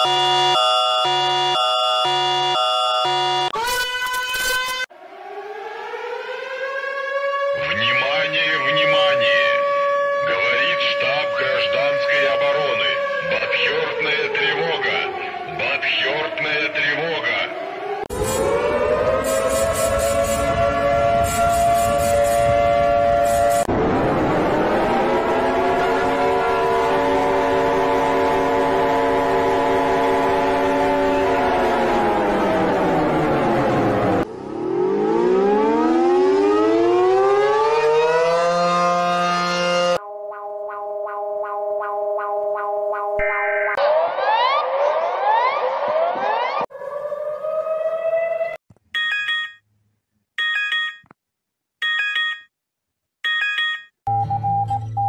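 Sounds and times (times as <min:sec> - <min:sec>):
air-raid siren winding: 0:00.0 - 0:04.9, 0:18.0 - 0:23.7
rising alarm sweep: 0:00.0 - 0:48.6
rising siren tone: 0:00.0 - 0:48.6.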